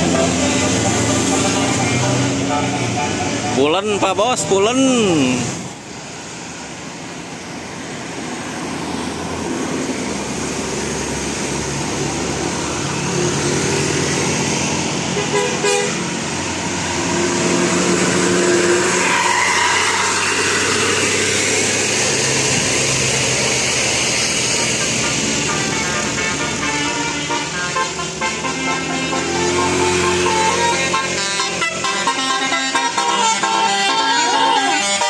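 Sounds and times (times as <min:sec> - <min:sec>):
engine and road noise: 0:00.0 - 0:35.0
bus musical horn playing tune: 0:15.1 - 0:16.2, 0:24.4 - 0:35.0.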